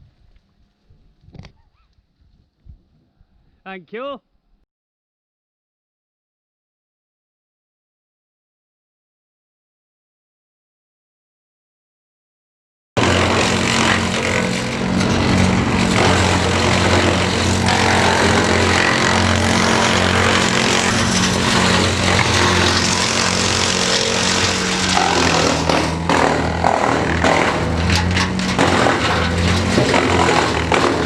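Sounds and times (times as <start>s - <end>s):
large engine at high revs: 13.0s - 31.0s.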